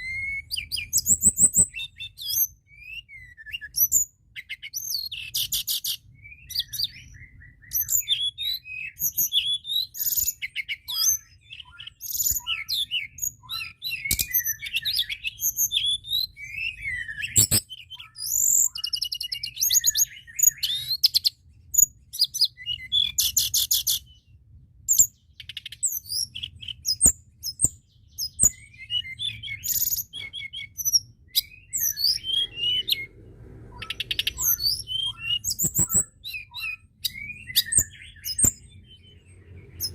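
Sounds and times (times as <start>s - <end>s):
songbird singing: 0.0s - 39.9s
faint low hum: 31.3s - 36.4s.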